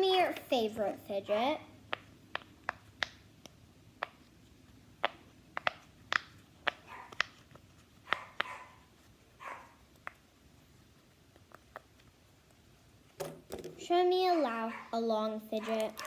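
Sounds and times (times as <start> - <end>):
soft rustling: 4.2 - 15.0.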